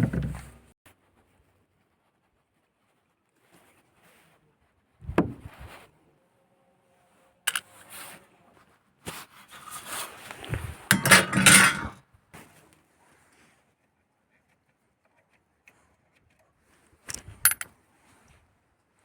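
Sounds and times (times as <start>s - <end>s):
rattling and scraping of parts: 0.0s - 0.7s, 7.5s - 7.7s, 9.5s - 12.0s
sharp knocks on metal parts: 10.9s - 12.0s, 17.5s - 17.7s.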